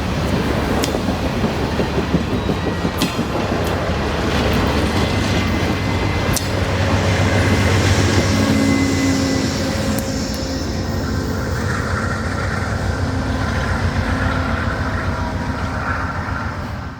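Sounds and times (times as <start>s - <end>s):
wheels clicking over rail joints: 0.0s - 8.9s
passenger train rumbling past: 0.0s - 16.9s.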